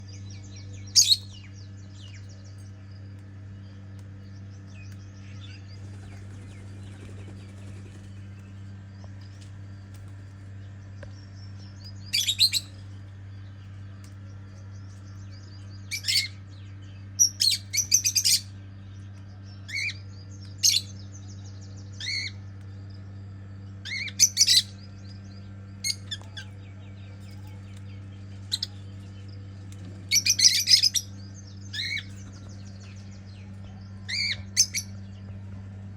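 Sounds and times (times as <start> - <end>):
steady low hum: 0.0 - 35.9
parrots chirping: 30.1 - 31.1.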